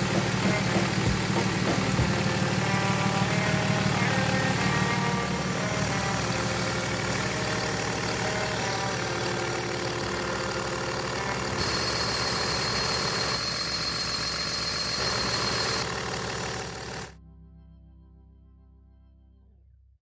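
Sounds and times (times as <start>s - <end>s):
car engine idling: 0.0s - 17.1s
loud high pulsing hiss: 11.6s - 15.9s.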